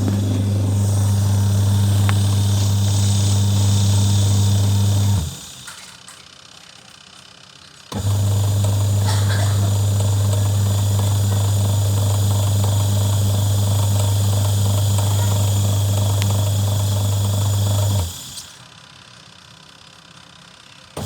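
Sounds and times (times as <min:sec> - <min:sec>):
washing machine motor humming: 0:00.0 - 0:05.8, 0:07.9 - 0:18.7.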